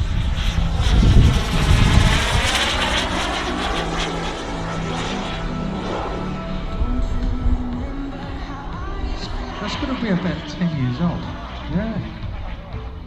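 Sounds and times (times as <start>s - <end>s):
model aircraft engine flying past: 0.0s - 13.0s.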